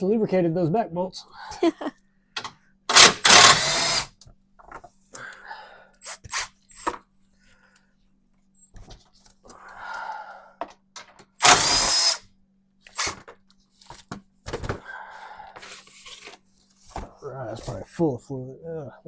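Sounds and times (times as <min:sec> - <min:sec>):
power drill burst: 0:02.9 - 0:04.1, 0:11.4 - 0:12.3, 0:12.9 - 0:13.2.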